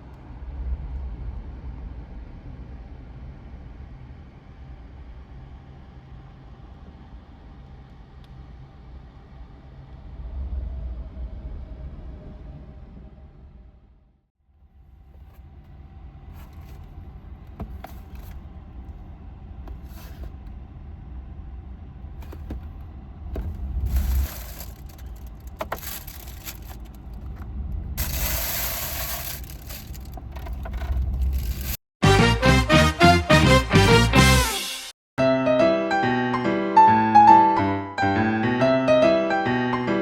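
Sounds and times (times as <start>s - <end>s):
scraping and rustling: 15.2s - 18.6s, 19.7s - 20.5s, 22.2s - 22.8s, 23.4s - 27.4s, 28.0s - 31.8s
piano music: 32.0s - 40.0s.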